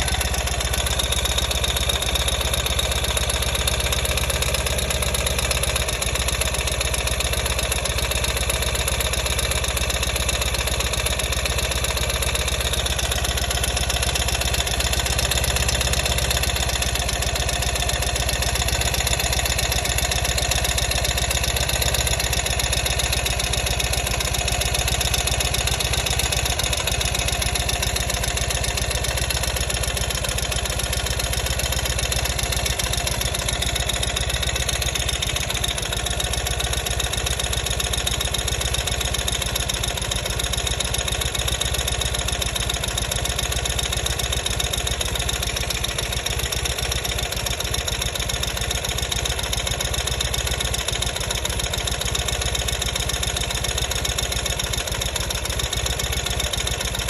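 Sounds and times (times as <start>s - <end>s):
motorcycle engine idling: 0.0s - 57.0s.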